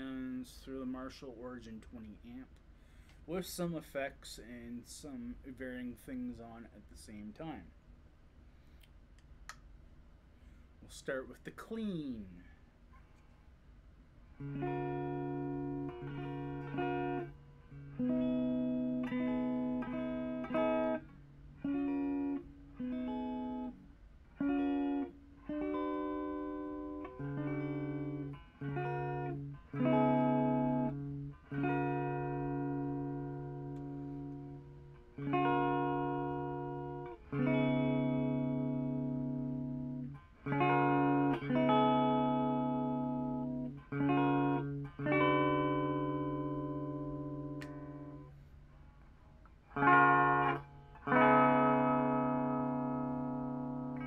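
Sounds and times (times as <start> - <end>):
clean electric guitar chords: 14.4 - 48.3, 49.7 - 54.0.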